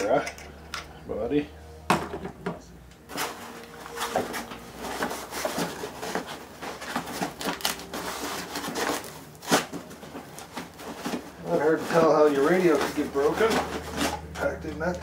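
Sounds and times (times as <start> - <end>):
packaging rustling and scraping: 3.0 - 15.0.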